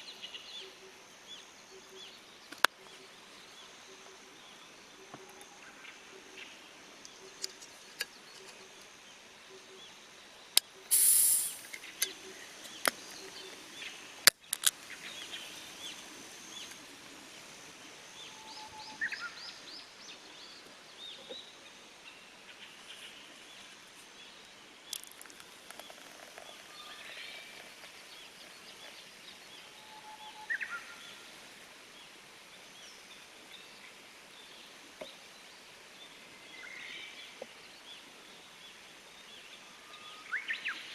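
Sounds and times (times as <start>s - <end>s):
loud hiss: 10.9s - 18.7s.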